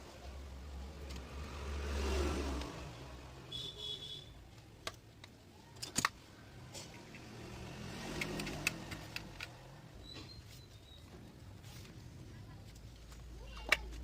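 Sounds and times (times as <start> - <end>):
clicks and taps of tools: 8.1 - 9.6.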